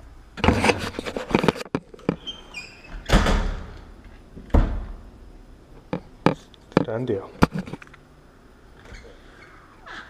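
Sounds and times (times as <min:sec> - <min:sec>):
cabinet door squeak: 0:02.2 - 0:03.7
cabinet door closing thump: 0:03.1 - 0:03.7, 0:04.5 - 0:05.0.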